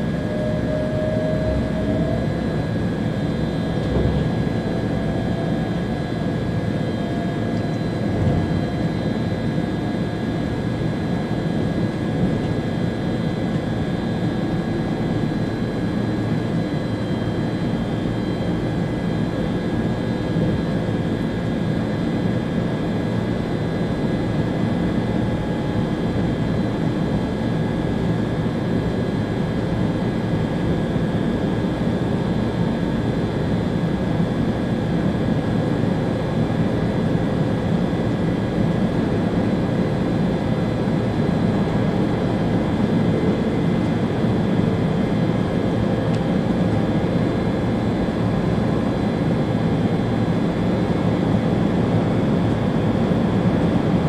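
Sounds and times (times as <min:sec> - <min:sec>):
faint high whine: 0:00.0 - 0:10.8.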